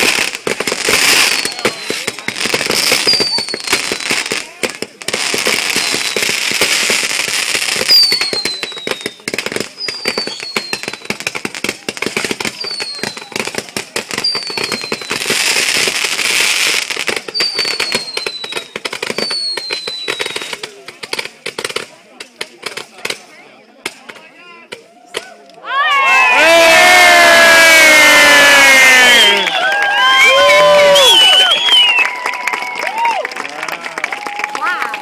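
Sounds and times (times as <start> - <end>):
falling firework whistles: 0.0 - 4.2, 7.6 - 11.2, 14.1 - 15.9, 16.7 - 20.6, 26.2 - 33.2
fireworks crackling and popping: 0.0 - 35.0.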